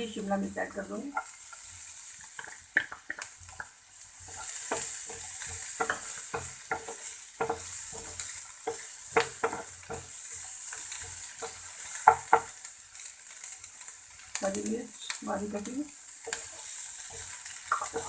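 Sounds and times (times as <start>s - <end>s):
vegetables sizzling in oil: 0.0s - 18.0s
spatula scraping a pan: 1.1s - 13.6s, 16.1s - 18.0s.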